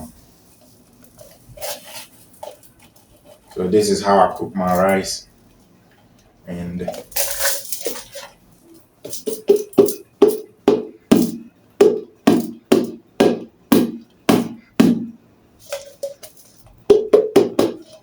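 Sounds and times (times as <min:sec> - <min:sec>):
sharp hollow knocks: 0:09.4 - 0:15.2, 0:16.9 - 0:18.0.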